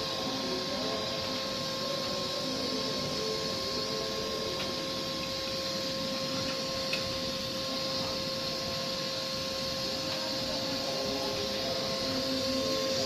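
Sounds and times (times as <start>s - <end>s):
welding equipment hiss and hum: 0.0s - 13.0s.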